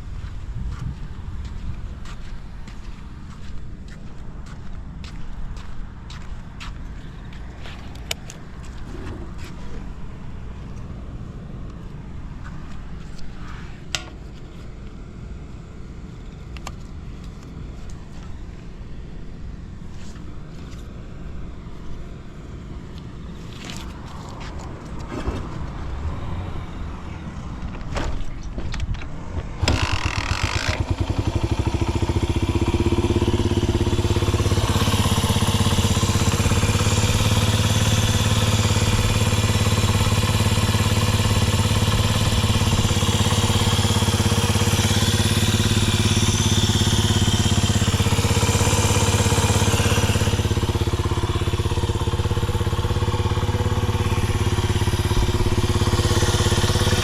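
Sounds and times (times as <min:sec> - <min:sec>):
small engine idling: 0:29.6 - 0:57.0.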